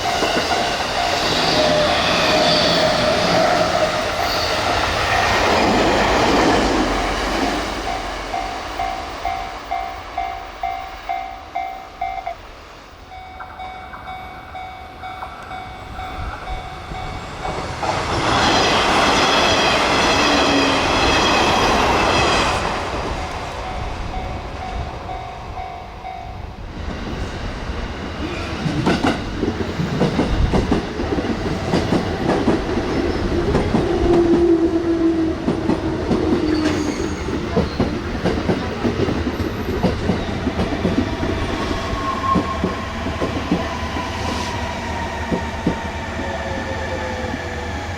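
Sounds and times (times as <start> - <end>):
train wheels clattering: 35.4 - 46.1.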